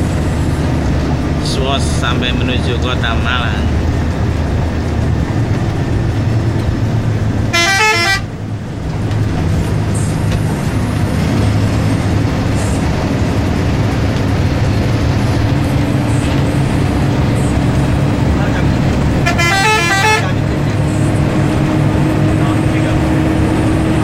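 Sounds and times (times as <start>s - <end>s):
bus engine rumble: 0.0s - 24.0s
road noise: 0.0s - 24.0s
musical bus horn: 7.4s - 8.4s, 19.1s - 20.7s.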